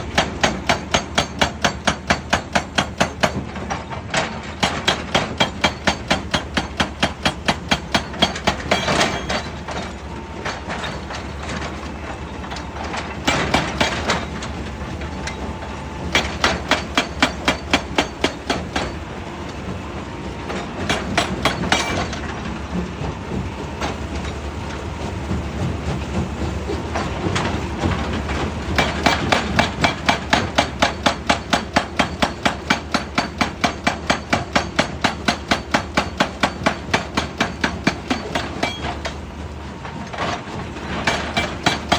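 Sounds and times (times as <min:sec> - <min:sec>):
rock crusher striking stone: 0:20.8 - 0:22.2, 0:28.7 - 0:39.0.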